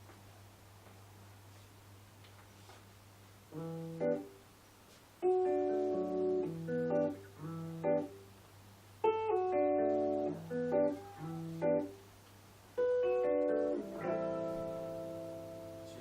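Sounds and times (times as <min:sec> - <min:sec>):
guitar strumming chords: 0:03.5 - 0:04.4, 0:05.2 - 0:08.2, 0:09.0 - 0:12.0, 0:12.8 - 0:16.0.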